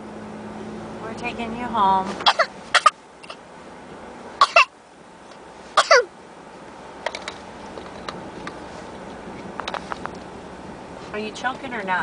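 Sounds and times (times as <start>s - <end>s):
child fake coughing: 2.2s - 2.9s, 4.4s - 4.7s, 5.8s - 6.1s.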